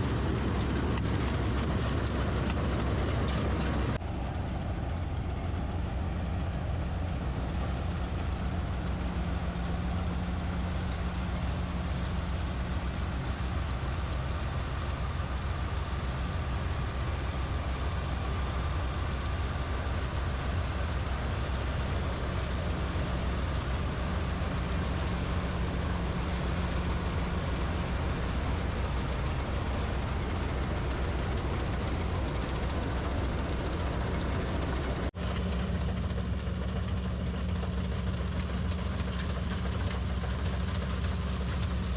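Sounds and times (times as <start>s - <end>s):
machinery noise: 0.0s - 4.0s, 13.3s - 41.9s
combine harvester engine droning: 0.0s - 41.9s.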